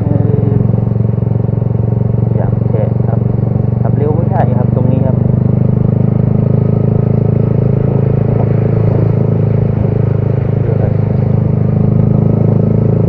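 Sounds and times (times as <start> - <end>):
motorcycle engine running: 0.0 - 13.0
tyres on wet road: 5.4 - 13.0.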